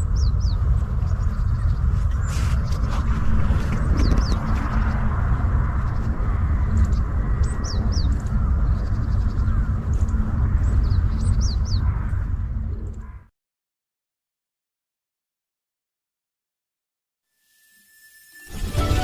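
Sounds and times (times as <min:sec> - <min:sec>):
small birds chirping: 0:00.0 - 0:13.2
loud low rumble: 0:00.0 - 0:13.3.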